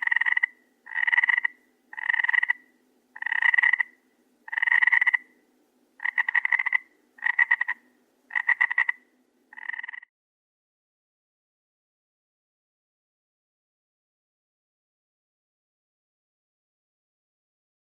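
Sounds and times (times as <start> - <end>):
frog croaking: 0.0 - 5.4, 6.0 - 10.1.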